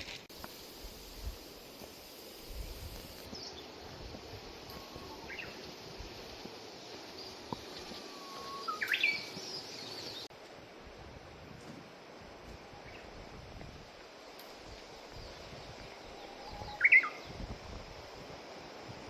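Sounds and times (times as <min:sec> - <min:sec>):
steady background hiss: 0:00.0 - 0:19.0
birds calling: 0:04.7 - 0:10.3.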